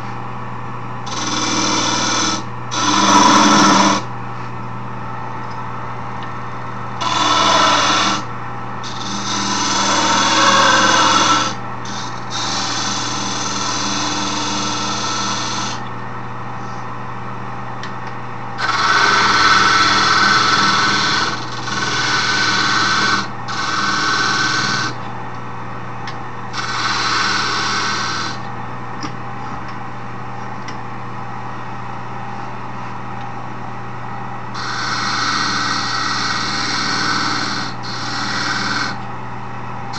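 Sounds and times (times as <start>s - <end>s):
lathe motor hum: 1.1s - 4.1s, 6.2s - 15.9s, 18.6s - 25.1s, 26.5s - 28.5s, 34.6s - 39.0s
turning tool rasping on wood: 1.1s - 4.1s, 7.0s - 15.8s, 18.6s - 25.0s, 26.6s - 28.4s, 34.6s - 39.0s.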